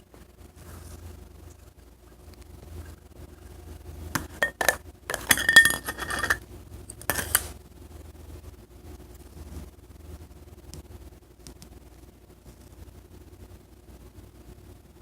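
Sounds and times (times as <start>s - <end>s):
hard objects clattering in container: 4.2s - 7.5s.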